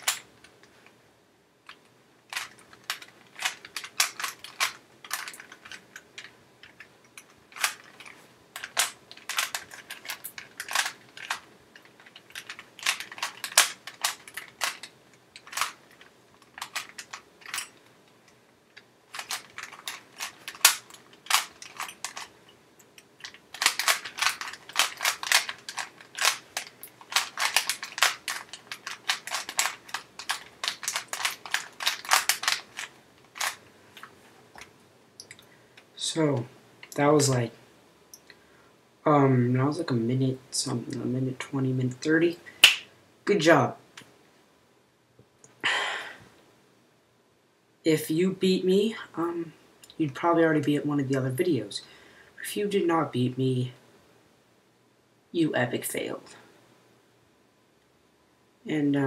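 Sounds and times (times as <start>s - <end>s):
puzzle cube clicking: 1.7s - 6.9s, 7.5s - 17.8s, 18.8s - 22.4s, 23.2s - 35.4s.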